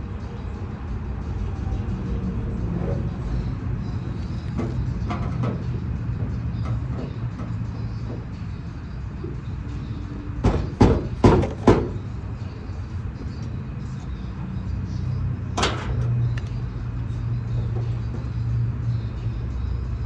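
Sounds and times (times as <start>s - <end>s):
steady low hum: 0.0s - 20.0s
sharp knocks: 10.4s - 12.0s.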